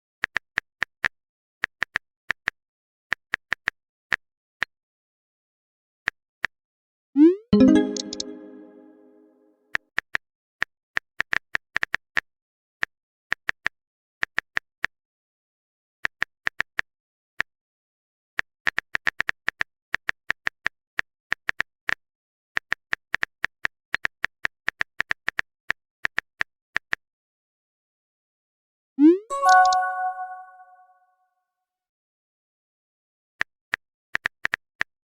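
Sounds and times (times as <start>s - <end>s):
typing clicks: 29.4s - 30.4s.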